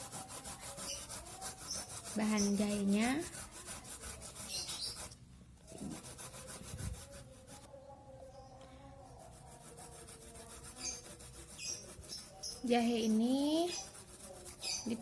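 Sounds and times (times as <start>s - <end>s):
ginger grated on hand grater: 0.0s - 5.2s, 9.2s - 15.0s.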